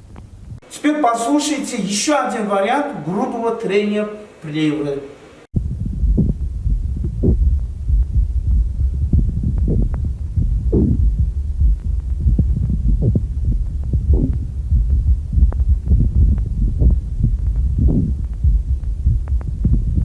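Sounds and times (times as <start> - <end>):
low rumble: 0.0 - 0.6, 5.6 - 20.0
rubbing sounds through stethoscope: 5.6 - 20.0.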